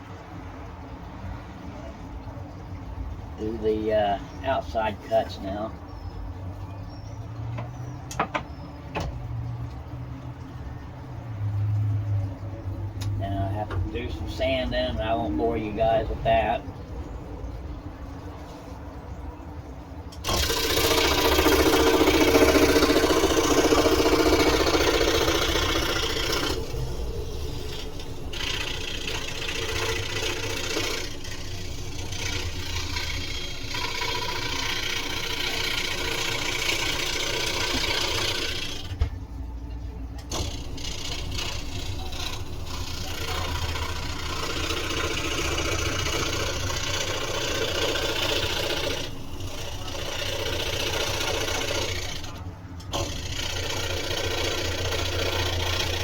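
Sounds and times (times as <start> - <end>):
electric sander on wood: 20.2 - 38.9, 40.3 - 56.0.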